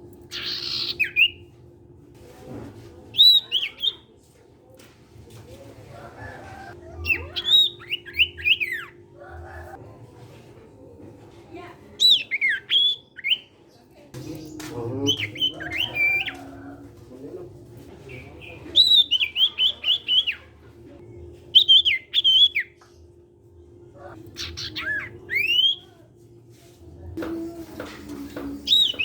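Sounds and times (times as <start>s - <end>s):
bird whistled chirps: 24.4s - 25.8s.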